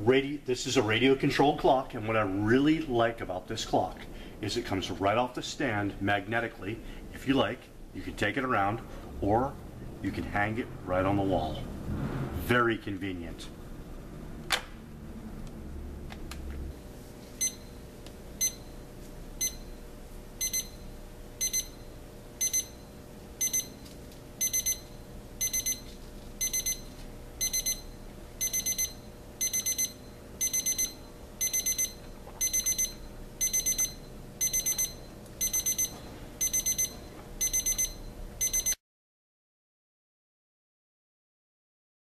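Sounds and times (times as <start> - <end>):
alarm clock beeping: 17.4 - 17.8, 18.4 - 18.7, 19.4 - 19.7, 20.4 - 20.8, 21.4 - 21.8, 22.4 - 22.8, 23.4 - 23.8, 24.4 - 38.8.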